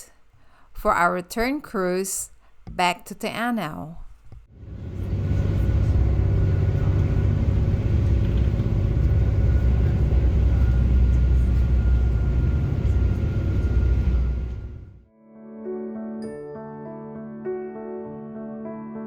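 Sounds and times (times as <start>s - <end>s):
faint steady hum: 0.0s - 15.0s
boat engine rumbling: 4.5s - 15.0s.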